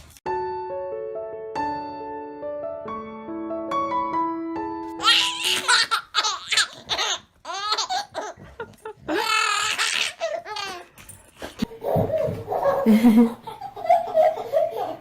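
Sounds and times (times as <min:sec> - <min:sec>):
piano notes: 0:00.3 - 0:07.0
baby laughing: 0:05.0 - 0:11.0, 0:11.6 - 0:15.0.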